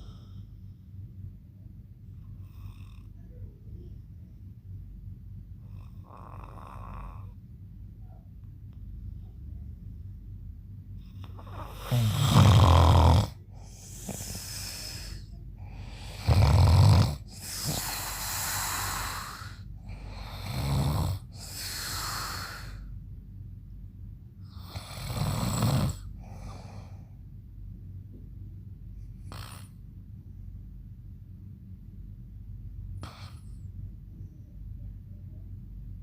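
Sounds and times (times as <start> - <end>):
man snoring: 5.6 - 7.3, 11.2 - 22.9, 24.5 - 26.8, 29.2 - 29.7
hissing breath: 13.5 - 16.3, 17.2 - 20.2, 21.3 - 22.9.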